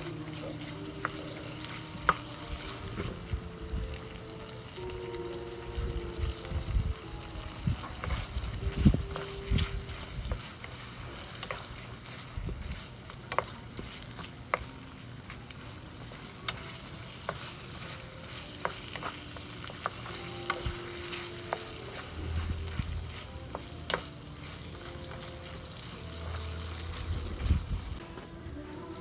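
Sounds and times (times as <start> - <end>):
chicken sizzling in a pan: 0.0 - 29.0.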